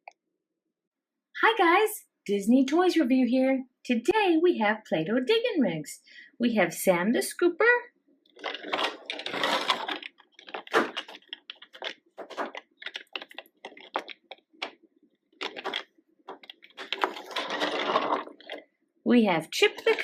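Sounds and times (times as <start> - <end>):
plastic toy clicking and rattling: 8.4 - 14.8, 15.4 - 18.6
scraping rustles: 8.4 - 14.8, 15.4 - 18.6.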